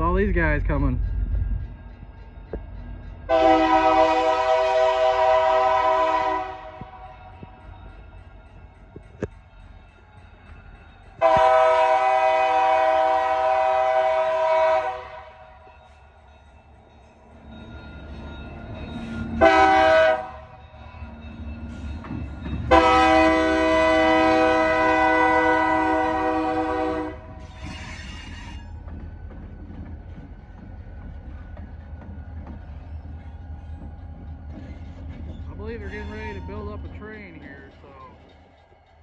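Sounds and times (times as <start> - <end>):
locomotive engines rumbling: 0.0 - 39.0
locomotive air horn blasts: 3.3 - 7.1, 11.2 - 15.5, 19.4 - 20.5, 22.7 - 27.4.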